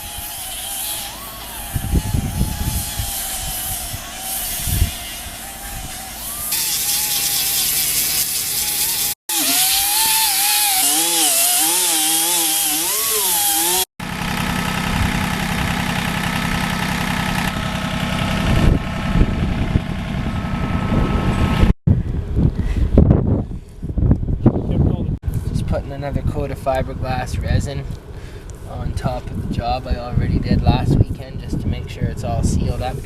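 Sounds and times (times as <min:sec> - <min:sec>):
electric power sander running: 0:00.0 - 0:21.3.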